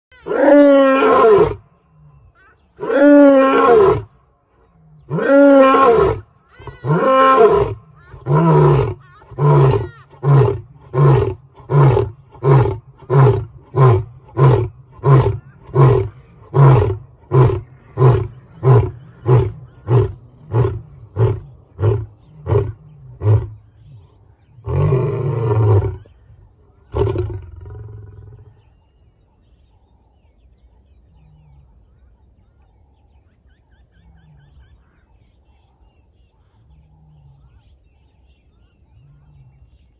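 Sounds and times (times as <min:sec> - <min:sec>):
lion grunting: 0:00.2 - 0:28.7
lion roaring: 0:06.8 - 0:26.1, 0:26.8 - 0:28.6.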